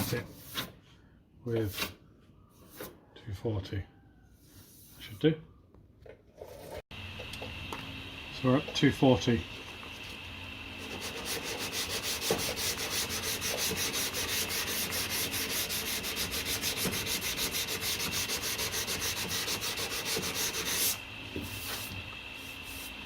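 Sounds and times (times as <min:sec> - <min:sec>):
sandpaper rasping strokes: 0:10.8 - 0:23.0.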